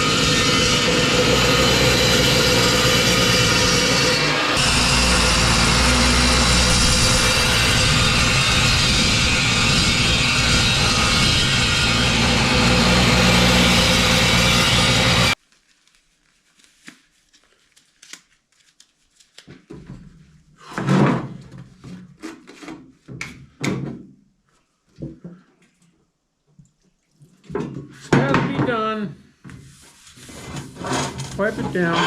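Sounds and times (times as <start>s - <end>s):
power tool motor running: 0.0s - 15.4s
knocks and clatter of workpieces: 19.4s - 24.2s, 27.4s - 29.7s, 30.3s - 32.0s.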